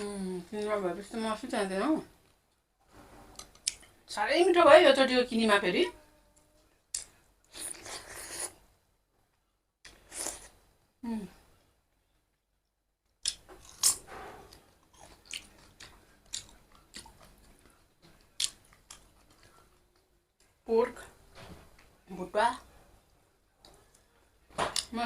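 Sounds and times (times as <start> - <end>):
person chewing and crunching food: 13.1 - 20.6.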